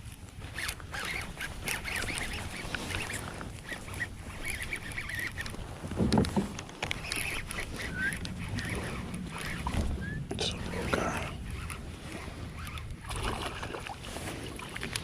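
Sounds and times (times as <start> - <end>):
scattered clicks: 0.6 - 11.8.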